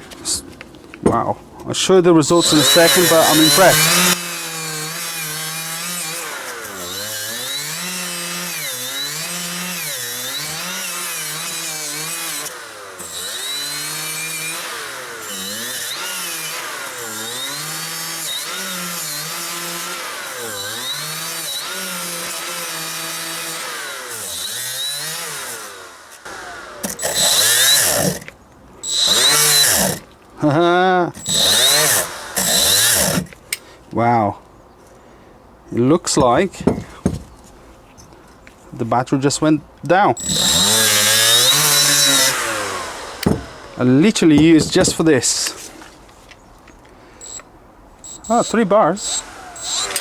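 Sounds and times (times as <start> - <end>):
die grinder motor on metal: 2.3 - 30.1, 31.1 - 33.4, 40.2 - 45.6, 48.0 - 50.0.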